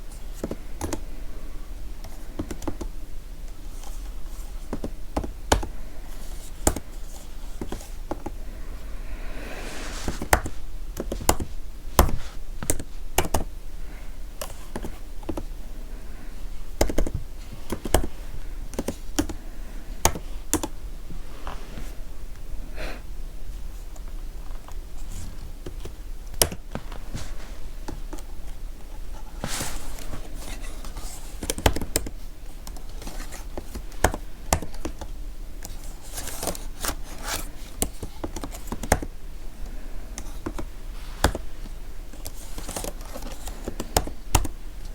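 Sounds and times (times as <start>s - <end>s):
keyboard typing clicks: 16.8s - 18.1s.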